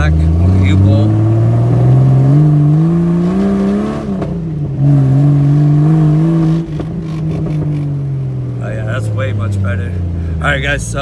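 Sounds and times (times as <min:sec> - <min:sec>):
car engine accelerating: 0:00.0 - 0:11.0.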